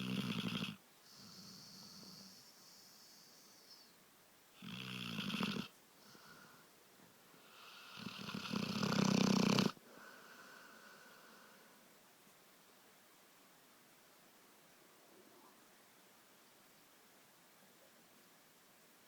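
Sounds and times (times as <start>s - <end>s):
soft breaths: 1.0s - 4.0s, 5.8s - 12.0s
person snoring: 7.5s - 9.8s.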